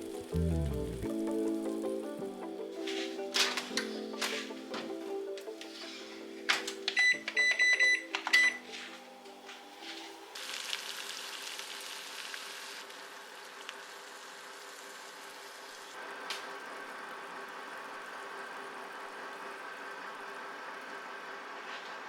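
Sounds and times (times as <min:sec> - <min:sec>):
soft steady hiss: 0:00.0 - 0:16.0
microwave oven beeping: 0:06.8 - 0:10.4.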